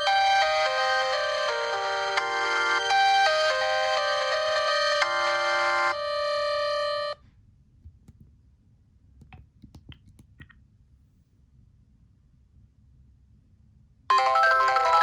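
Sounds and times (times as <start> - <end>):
polyphonic phone ringtone: 0.0 - 7.2, 14.1 - 15.0.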